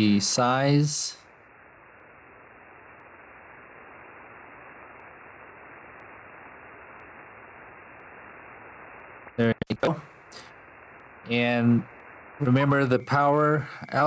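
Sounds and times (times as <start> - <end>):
radio static hiss: 0.0 - 14.0
faint ticks: 2.8 - 3.2, 4.7 - 7.3.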